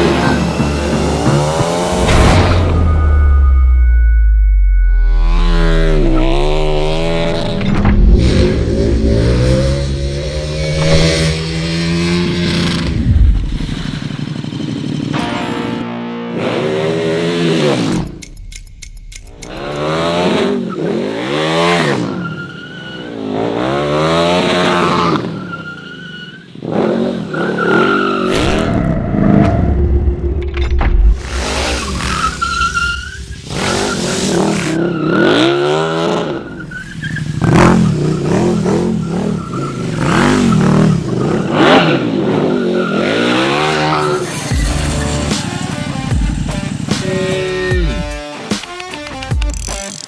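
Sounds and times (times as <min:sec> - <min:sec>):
motorcycle engine revving: 0:05.0 - 0:22.2, 0:31.1 - 0:48.3
tyres squealing and skidding: 0:19.6 - 0:28.9, 0:31.2 - 0:45.9.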